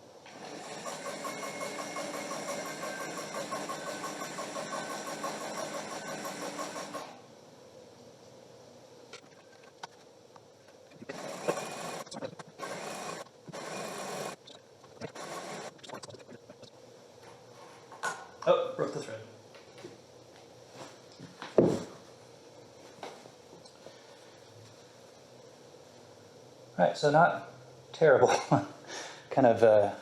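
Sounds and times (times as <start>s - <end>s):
sewing machine stitching: 0.4s - 7.2s, 11.1s - 14.4s, 15.0s - 15.8s.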